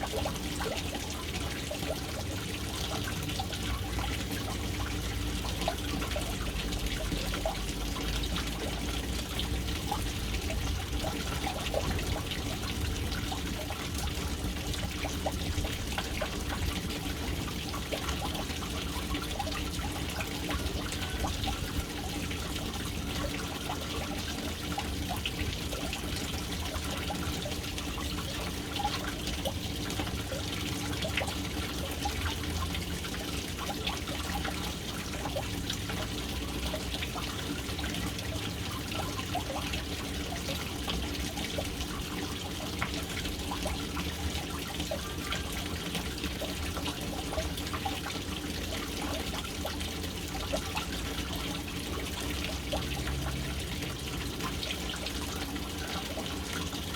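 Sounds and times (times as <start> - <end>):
water trickling into a tank: 0.0 - 56.9.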